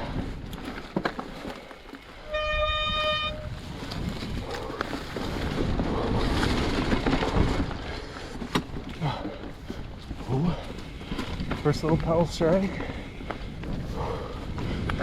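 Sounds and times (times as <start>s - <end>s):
bike tyres on rocky ground: 0.0s - 15.0s
wind on microphone: 2.3s - 8.0s, 12.8s - 15.0s.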